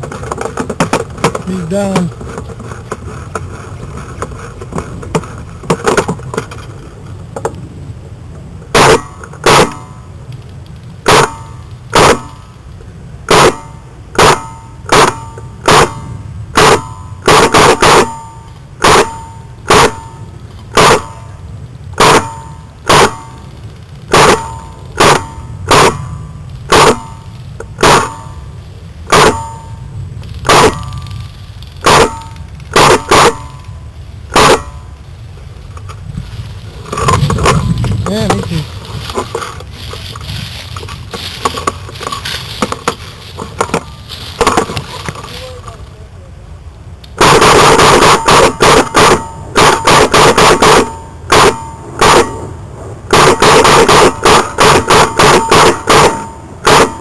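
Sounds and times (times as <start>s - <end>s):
airsoft rifle shots: 8.8s - 9.9s, 11.0s - 12.5s, 13.3s - 21.3s, 22.0s - 23.4s, 24.1s - 26.1s, 26.7s - 28.4s, 29.1s - 29.7s, 30.4s - 31.0s, 31.8s - 33.6s, 34.3s - 34.9s, 47.2s - 52.4s, 53.1s - 57.0s.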